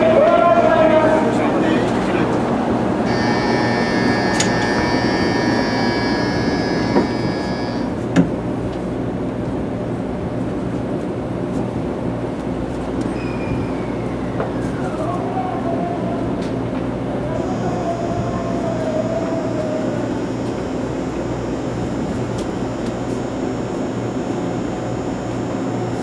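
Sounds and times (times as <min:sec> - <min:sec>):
train ride rumble: 0:00.0 - 0:26.0
high whine: 0:03.0 - 0:08.1, 0:17.2 - 0:26.0.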